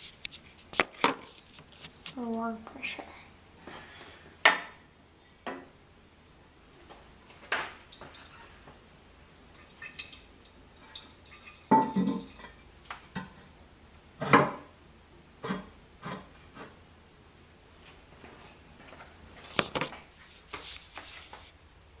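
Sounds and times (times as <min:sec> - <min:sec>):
porcelain lid clunking and scraping: 0:11.6 - 0:13.5, 0:14.2 - 0:14.7, 0:15.4 - 0:16.8.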